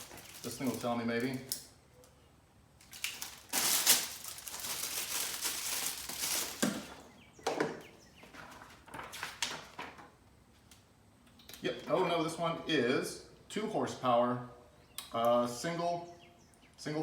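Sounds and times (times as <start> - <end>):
packaging rustling: 0.0 - 1.6, 2.8 - 7.1, 8.2 - 10.2.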